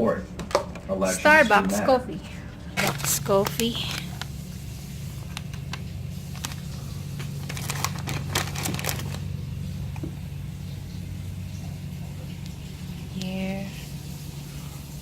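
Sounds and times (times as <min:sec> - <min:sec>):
steady low hum: 0:00.0 - 0:15.0
packets crinkling and clicking: 0:02.8 - 0:10.1.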